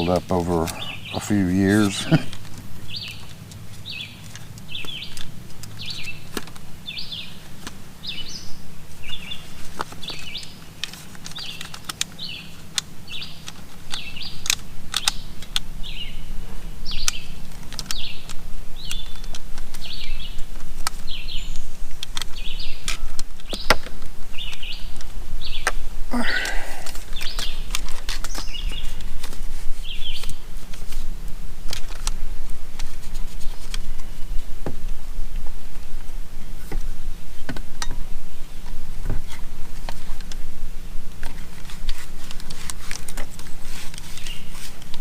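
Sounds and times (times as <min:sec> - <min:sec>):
bird chirping: 0:00.0 - 0:31.0, 0:43.7 - 0:45.0.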